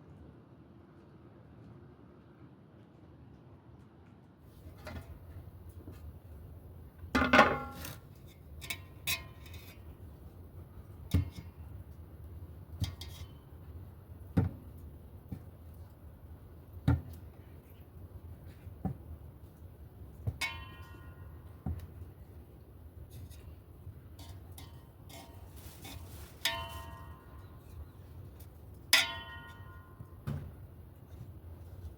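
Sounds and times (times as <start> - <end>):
dishes clattering: 7.2 - 7.9
kitchenware knocks and clinks: 7.2 - 8.0.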